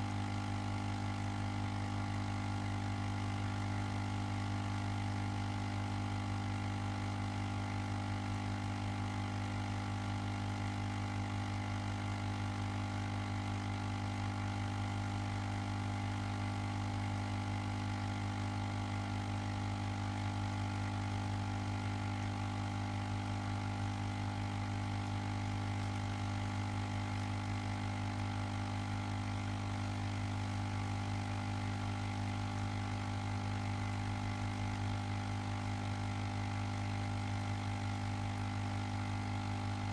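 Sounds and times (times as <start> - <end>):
ozone generator electrical hum: 7.8 - 39.9.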